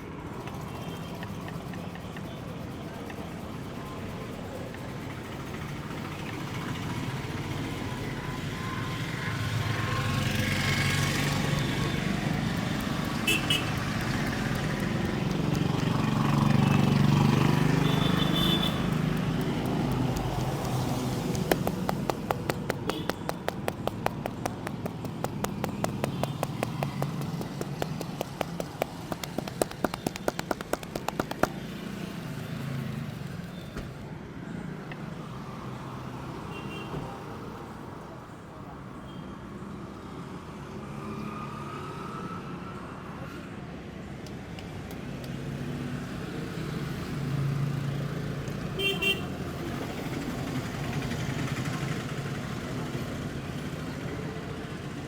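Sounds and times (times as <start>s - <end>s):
street traffic: 0.0s - 55.0s
vehicle passing: 9.4s - 33.4s
hands slapping on head: 17.8s - 31.7s.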